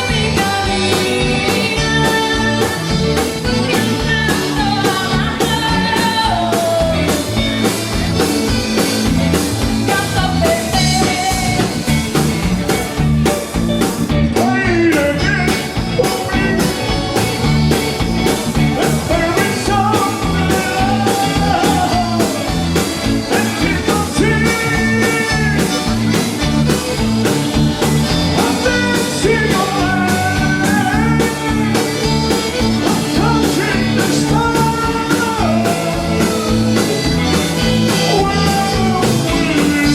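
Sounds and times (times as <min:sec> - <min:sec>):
person singing: 0:00.0 - 0:08.0, 0:09.9 - 0:12.0, 0:18.7 - 0:39.9
band playing: 0:00.0 - 0:39.9
drums beating: 0:00.0 - 0:39.9
guitar: 0:00.0 - 0:39.9.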